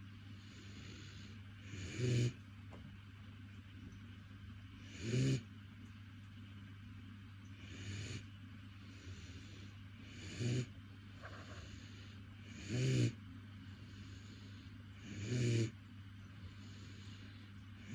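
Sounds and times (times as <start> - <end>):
puppy snoring: 0.4 - 2.4, 4.8 - 5.5, 7.6 - 8.3, 8.9 - 13.2, 13.8 - 15.8, 16.5 - 17.9.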